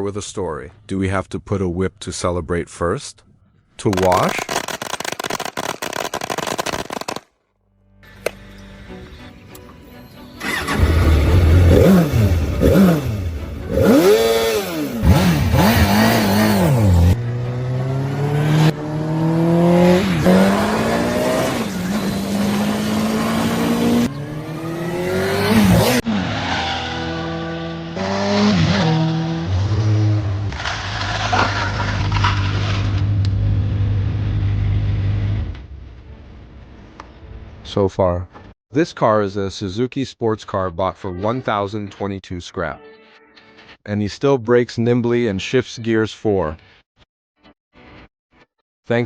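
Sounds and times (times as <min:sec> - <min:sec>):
motorcycle engine revving: 0:10.4 - 0:30.5
motorcycle accelerating through gears: 0:10.5 - 0:30.5.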